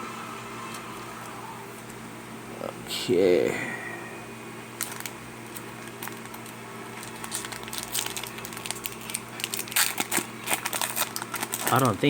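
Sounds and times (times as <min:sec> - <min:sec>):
plastic crinkling: 0:04.8 - 0:12.0.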